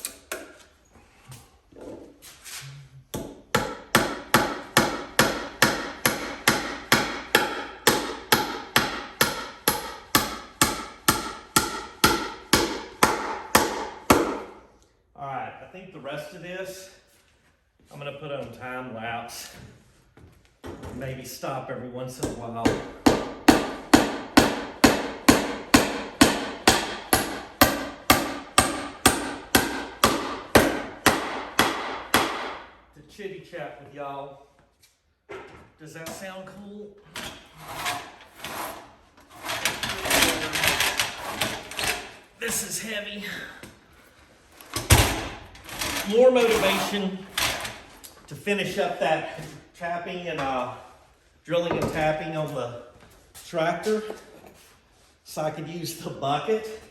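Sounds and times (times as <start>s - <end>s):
hammer driving nails into wood: 3.1s - 14.6s, 22.2s - 32.8s.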